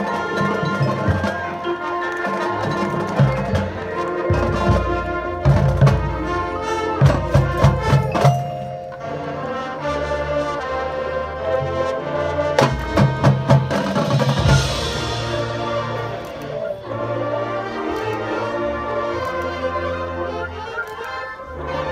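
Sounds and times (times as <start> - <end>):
brass chords: 0.0 - 21.9
sharp percussion hits: 7.0 - 9.2, 12.6 - 16.9.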